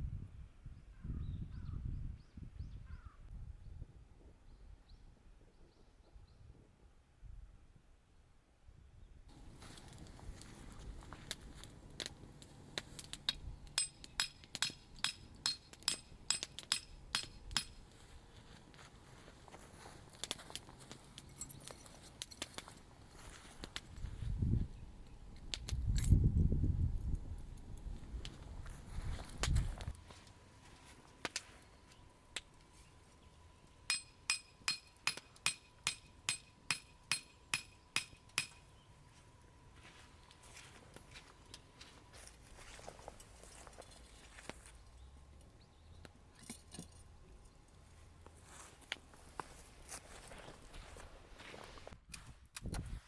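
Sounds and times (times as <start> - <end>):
hammer striking metal: 13.3 - 17.8, 33.9 - 38.7.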